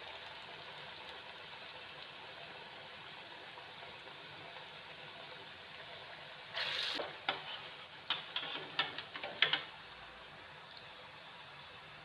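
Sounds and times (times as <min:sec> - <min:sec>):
fritters sizzling in hot oil: 0:00.0 - 0:12.0
utensil clicking against frying pan: 0:08.1 - 0:09.7.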